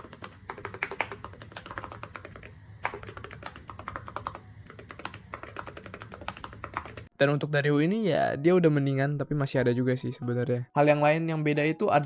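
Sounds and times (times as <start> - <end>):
fast typing on mechanical keyboard: 0.0 - 7.1.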